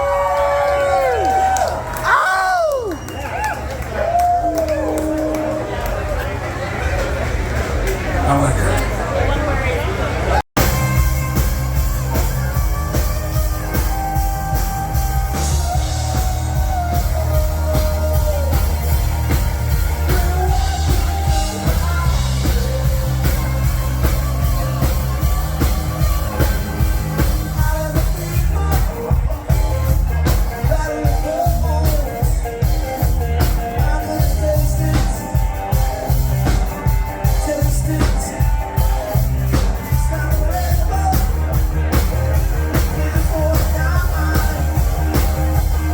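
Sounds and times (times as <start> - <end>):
rock song with singing: 10.6 - 45.9.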